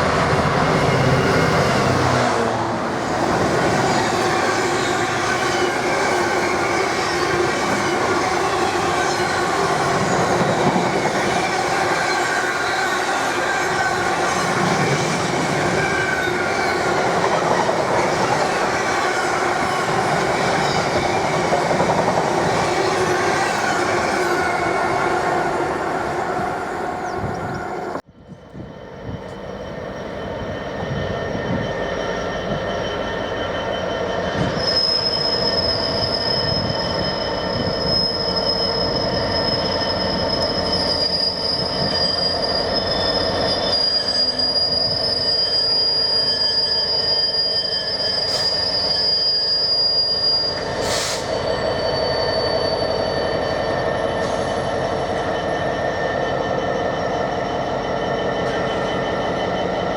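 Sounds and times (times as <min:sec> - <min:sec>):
train rumbling on rails: 0:00.0 - 0:59.9
high-pitched wheel squeal: 0:29.4 - 0:59.9.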